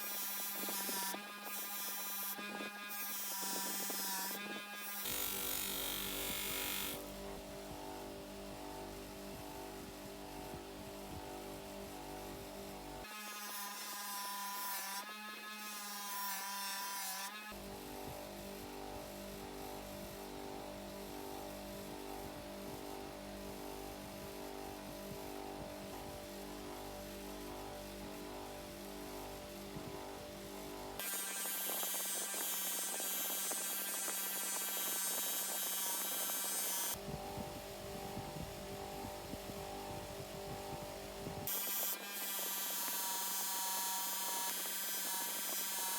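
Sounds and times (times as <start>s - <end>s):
electric polishing tool motor: 0.0s - 45.9s
electrical hum: 37.0s - 41.6s.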